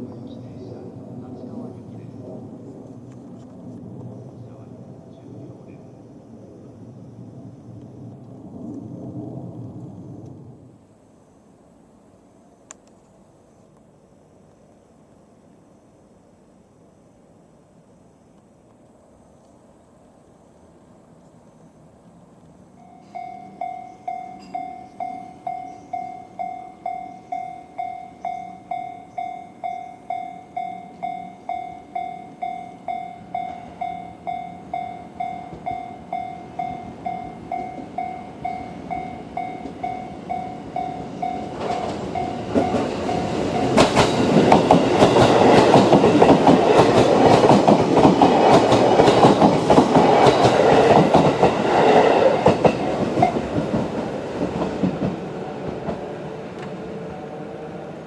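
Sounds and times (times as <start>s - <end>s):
level crossing electronic bell: 22.8s - 43.8s
train wheels clattering: 23.0s - 56.8s.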